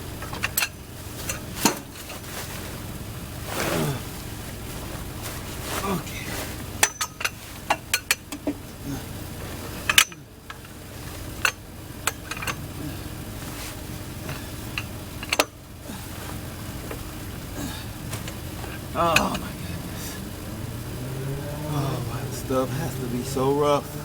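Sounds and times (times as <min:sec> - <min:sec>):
metallic clanks and knocks: 0:00.0 - 0:02.2, 0:06.4 - 0:08.8, 0:09.4 - 0:12.8, 0:14.2 - 0:15.6
steady low hum: 0:00.0 - 0:24.0.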